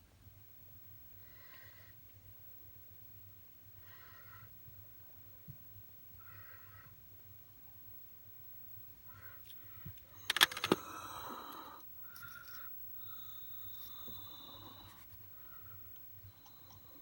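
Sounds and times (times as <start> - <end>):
sharp clicks of small parts: 10.2 - 10.8.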